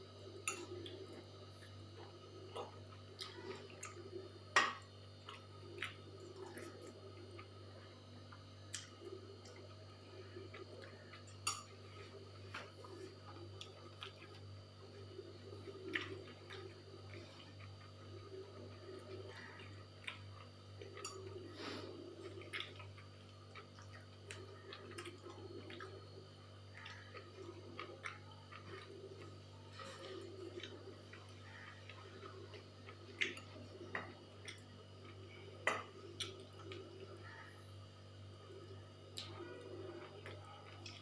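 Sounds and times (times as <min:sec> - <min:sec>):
steady low hum: 0:00.0 - 0:41.0
chewing and wet mouth sounds: 0:00.2 - 0:41.0.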